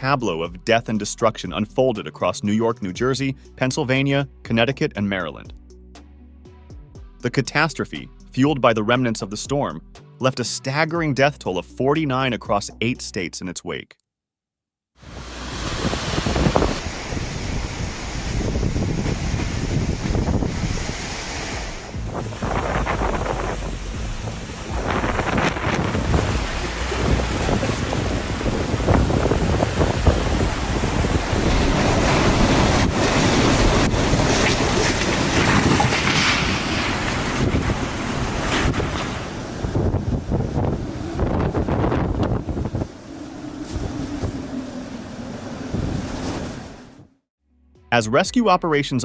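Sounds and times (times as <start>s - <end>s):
wind and water rushing: 15.0s - 47.1s
wind buffeting microphone: 15.0s - 47.1s.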